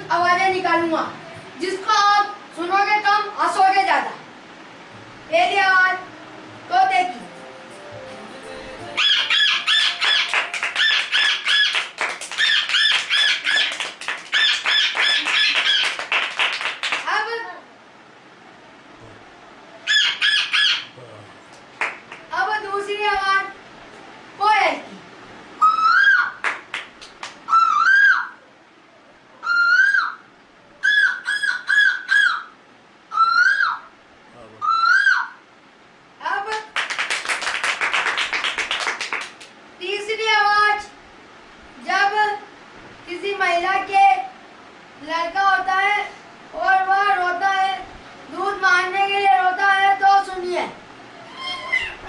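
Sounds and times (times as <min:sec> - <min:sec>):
person imitating bird calls: 0:08.8 - 0:16.0, 0:33.1 - 0:35.4, 0:51.2 - 0:52.0
person imitating bird squawks: 0:33.1 - 0:35.4, 0:51.2 - 0:52.0.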